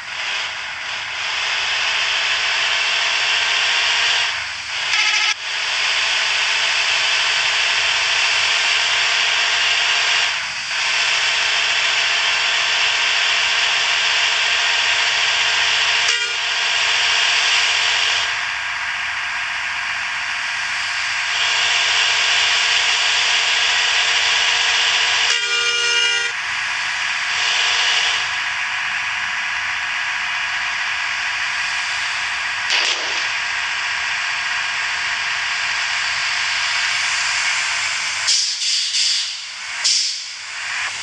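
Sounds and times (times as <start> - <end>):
bus multi-tone air horn: 4.8 - 5.4, 15.9 - 17.0, 25.0 - 26.4.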